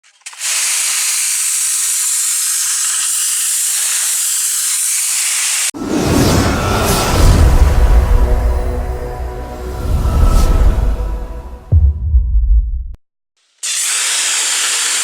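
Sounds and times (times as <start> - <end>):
pressure washer spraying: 0.3 - 5.7, 13.6 - 15.0.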